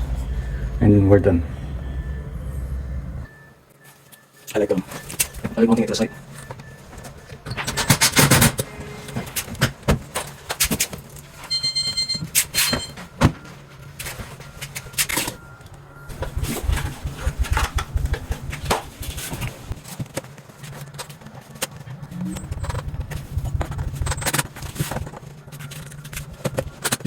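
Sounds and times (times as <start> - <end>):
low hum: 0.0 - 3.9, 12.8 - 19.8
brief high tone: 0.0 - 8.0
knocks clicks and rattles: 4.9 - 21.8.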